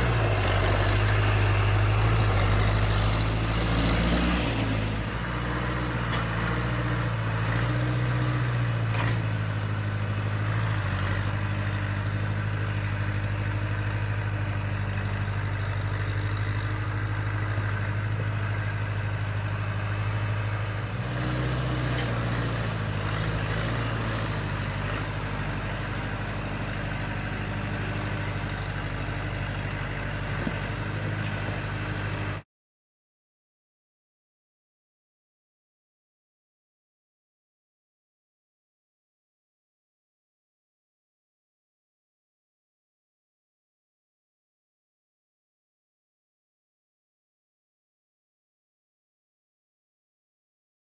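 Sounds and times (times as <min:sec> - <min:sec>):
snow clearing machine engine: 0:00.0 - 0:32.4.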